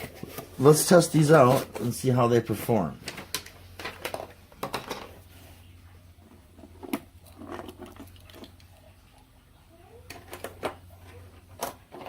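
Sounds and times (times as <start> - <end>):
handling clicks and rustles: 0.0 - 5.4.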